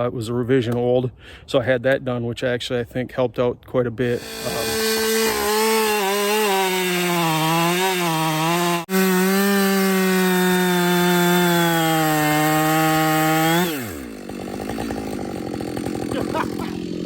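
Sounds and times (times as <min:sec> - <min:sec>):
chainsaw cutting wood: 0:04.1 - 0:17.0.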